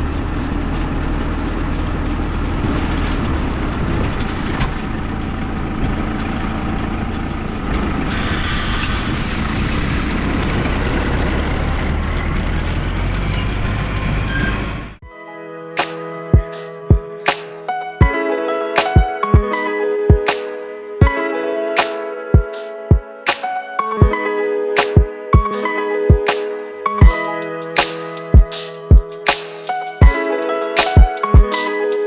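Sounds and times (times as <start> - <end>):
tractor engine drone: 0.0 - 15.0.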